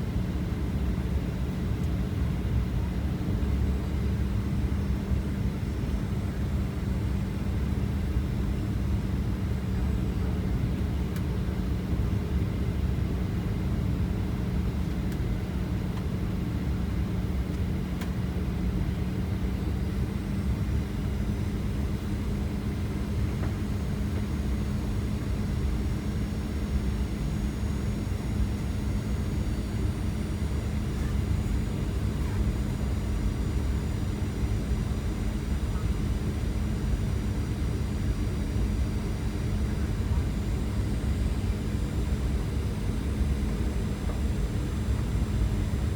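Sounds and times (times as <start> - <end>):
airliner cabin engine rumble: 0.0 - 45.9
constant hum: 0.0 - 45.9.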